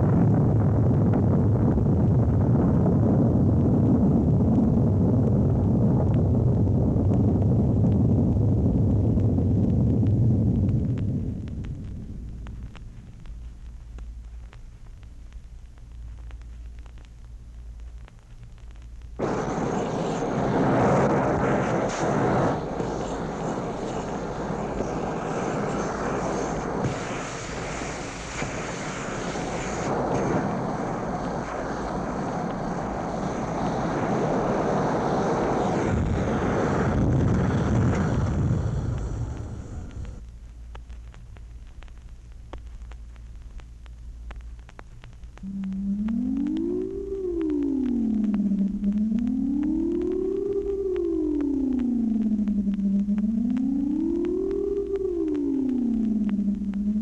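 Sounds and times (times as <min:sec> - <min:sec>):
faint high whine: 0:00.0 - 0:57.0
low rumble: 0:00.0 - 0:57.0
jet-like rushing noise: 0:19.2 - 0:40.2.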